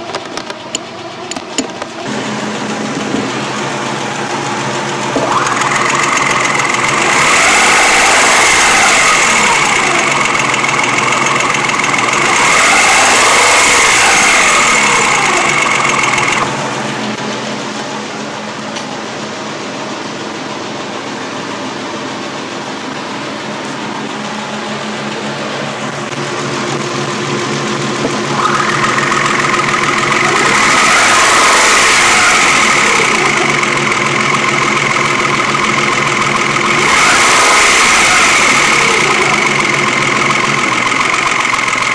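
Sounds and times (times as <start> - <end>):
engine idling close up: 0.0 - 41.9
high whine sweeping in pitch: 2.1 - 16.8, 25.9 - 41.8.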